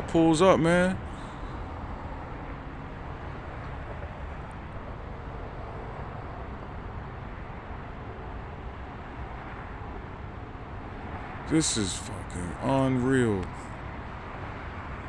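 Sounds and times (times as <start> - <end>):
traffic noise: 0.0 - 15.0
vehicle engine rumble: 11.5 - 15.0.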